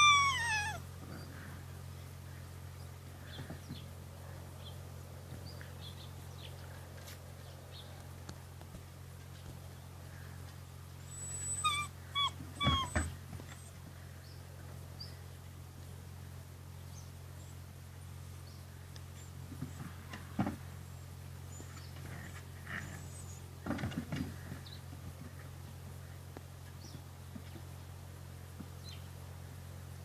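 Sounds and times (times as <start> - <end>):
puppies whimpering: 0.0 - 0.9, 11.0 - 13.8
puppy high yelps: 0.0 - 0.9, 11.1 - 13.8
faint squeaks: 0.0 - 1.3, 11.0 - 13.8
steady low hum: 0.0 - 30.0.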